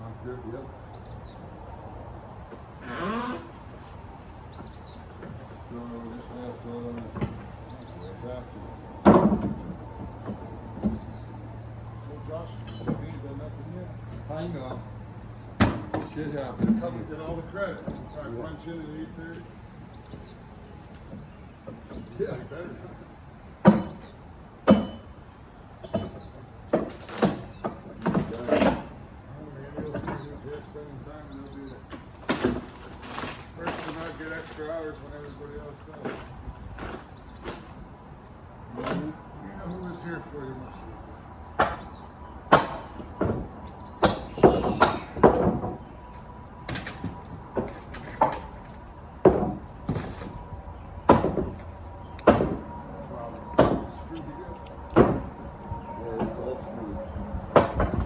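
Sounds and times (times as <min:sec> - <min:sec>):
wooden knocks and clatters: 0:09.0 - 0:11.2, 0:25.9 - 0:28.9, 0:42.5 - 0:50.4
demolition knocks on wood: 0:31.9 - 0:34.6, 0:42.5 - 0:45.8, 0:51.1 - 0:51.6.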